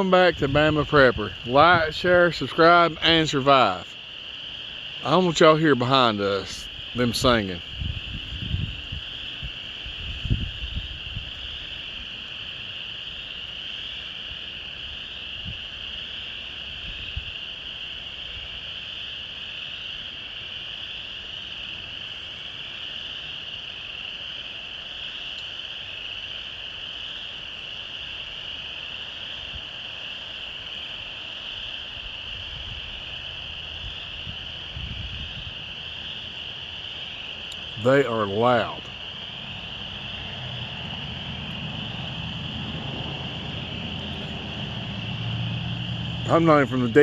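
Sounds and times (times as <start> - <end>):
chorus of calling frogs or insects: 0.0 - 47.0
faint low bumps: 37.5 - 47.0.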